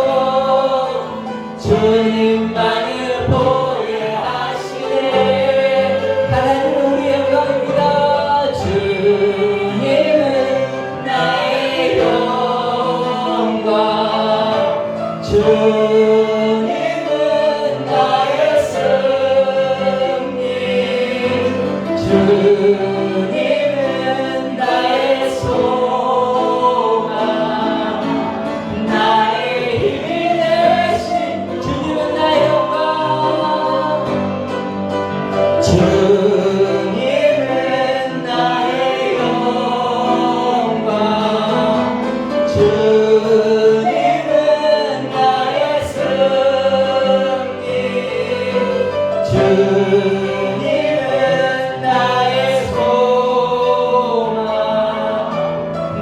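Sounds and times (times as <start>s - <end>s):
group singing worship song: 0.0s - 56.0s
instrumental accompaniment: 0.0s - 56.0s.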